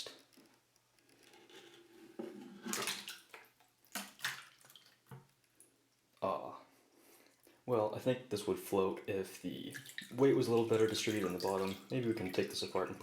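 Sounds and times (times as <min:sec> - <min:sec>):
water sloshing in a tub: 0:02.2 - 0:05.7, 0:09.1 - 0:13.0
short splashes: 0:02.6 - 0:05.2, 0:09.6 - 0:13.0.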